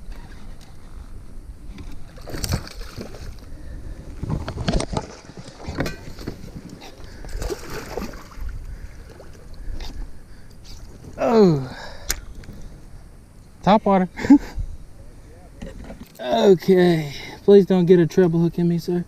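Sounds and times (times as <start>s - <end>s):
water sloshing against kayak: 0.0s - 11.2s
wind rumbling on microphone: 0.0s - 16.1s
splashes: 2.1s - 3.4s, 7.1s - 9.4s.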